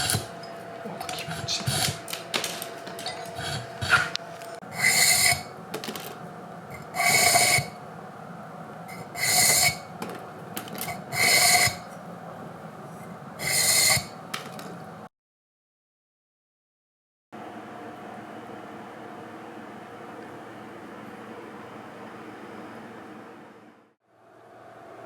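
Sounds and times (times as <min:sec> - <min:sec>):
bamboo being scraped: 0:00.0 - 0:00.4, 0:01.0 - 0:02.1, 0:03.0 - 0:05.5, 0:06.8 - 0:07.8, 0:08.9 - 0:09.9, 0:10.8 - 0:11.9, 0:13.4 - 0:14.2
handling noise: 0:00.0 - 0:04.6.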